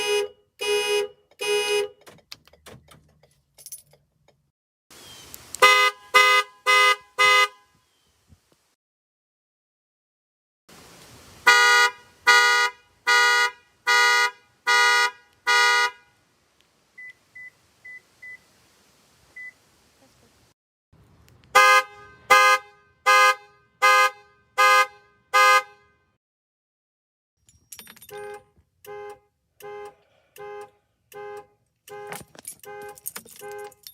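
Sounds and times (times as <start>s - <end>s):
car horn honking: 0.0s - 2.0s, 5.6s - 7.8s, 11.4s - 16.2s, 21.5s - 26.2s, 28.1s - 33.8s
second car horn honking: 0.0s - 2.0s, 5.6s - 7.8s, 11.5s - 16.2s, 21.5s - 26.1s, 28.1s - 33.8s.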